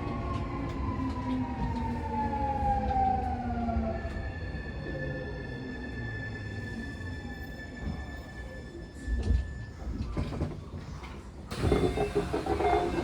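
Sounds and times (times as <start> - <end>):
train motor whine: 11.5 - 13.0.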